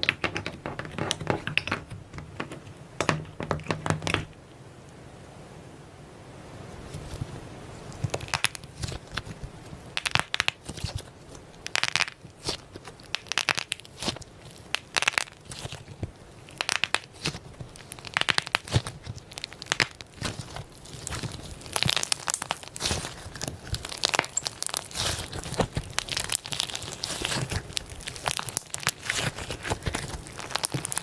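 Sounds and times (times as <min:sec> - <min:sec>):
slime squished by hand: 0:08.0 - 0:31.0.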